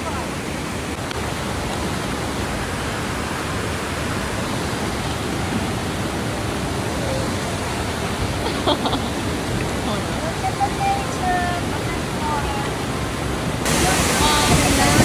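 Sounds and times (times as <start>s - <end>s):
waterfall rushing: 0.0s - 15.0s.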